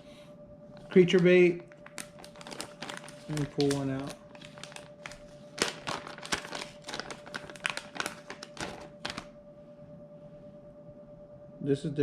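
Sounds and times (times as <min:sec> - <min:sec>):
plastic bag crinkling: 0:00.8 - 0:09.3.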